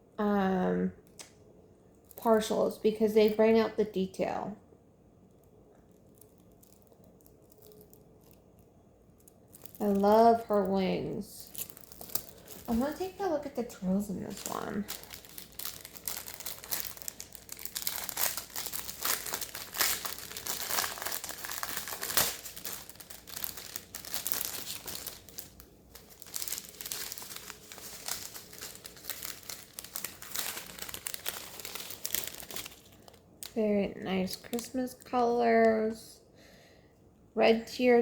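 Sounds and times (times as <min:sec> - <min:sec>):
plastic bags crinkling: 0:05.8 - 0:34.8.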